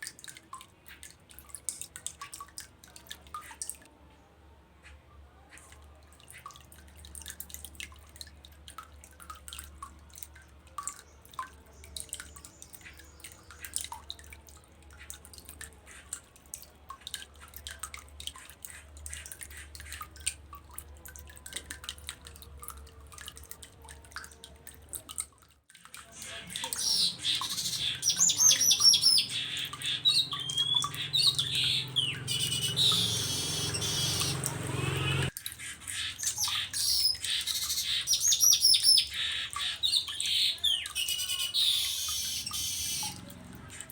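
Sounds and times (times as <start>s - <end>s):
bird singing chattering notes: 26.3s - 35.3s, 35.9s - 43.2s.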